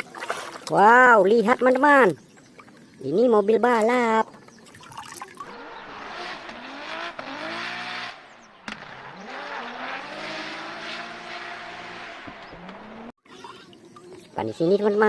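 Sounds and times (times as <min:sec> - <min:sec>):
racing car engine revving: 0:05.5 - 0:13.2.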